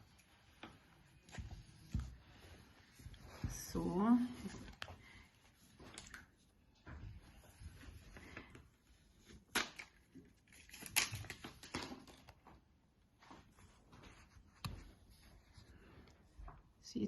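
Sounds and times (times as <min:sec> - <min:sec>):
small clicks and rustles: 0:04.4 - 0:08.6.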